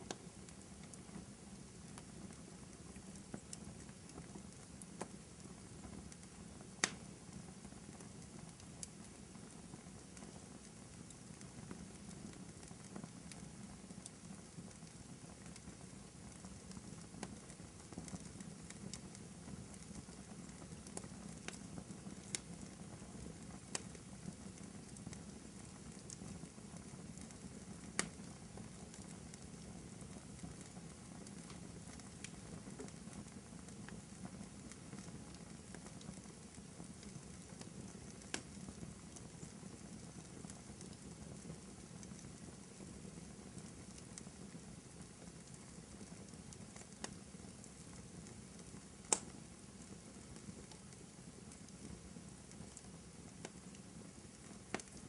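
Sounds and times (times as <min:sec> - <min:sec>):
fire crackling in fireplace: 0:00.0 - 0:55.0
sharp pops and snaps: 0:28.0 - 0:28.2, 0:37.6 - 0:39.5, 0:49.0 - 0:49.4, 0:54.7 - 0:55.0.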